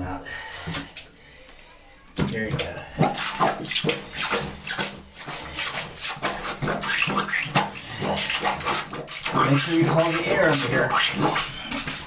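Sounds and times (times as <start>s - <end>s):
water splashing: 2.2s - 12.0s
plunger strokes: 3.0s - 12.0s.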